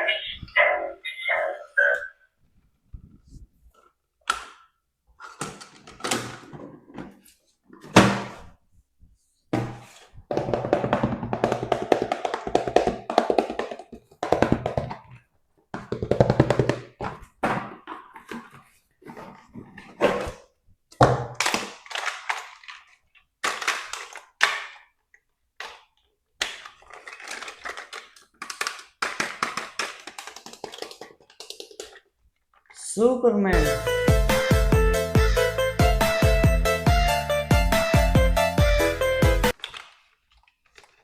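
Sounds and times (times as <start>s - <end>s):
plastic packaging taps and rustling: 9.6s - 18.7s, 20.9s - 32.6s, 39.5s - 41.0s.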